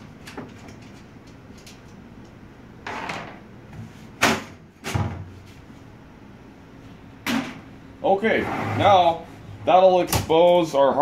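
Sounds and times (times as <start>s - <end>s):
computer case panel scraping: 8.3s - 9.2s.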